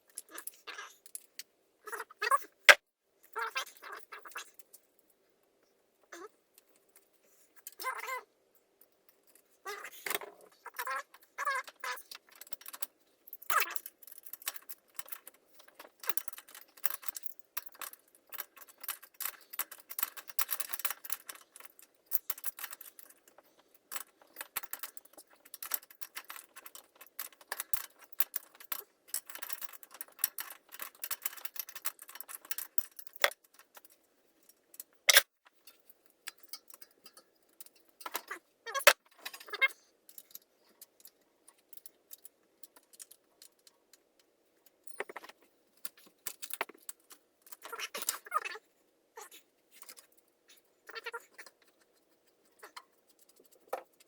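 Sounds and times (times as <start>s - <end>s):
metal tools and parts clinking: 9.2s - 43.7s, 44.8s - 48.6s.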